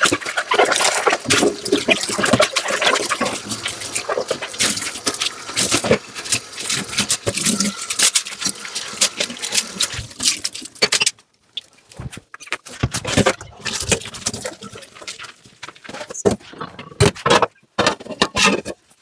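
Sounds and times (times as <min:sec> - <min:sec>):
running water: 0:00.0 - 0:12.1.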